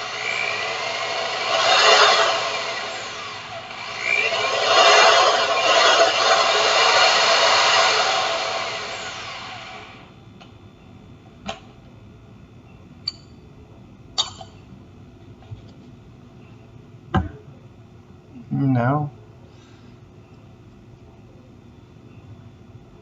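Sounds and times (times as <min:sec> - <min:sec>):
power drill grinding coffee beans: 0:00.0 - 0:10.1.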